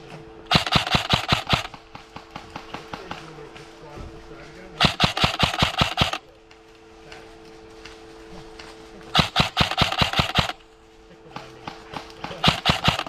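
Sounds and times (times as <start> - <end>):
airsoft gun shots: 0.5 - 3.3, 4.8 - 6.2, 9.2 - 10.6, 11.6 - 13.0.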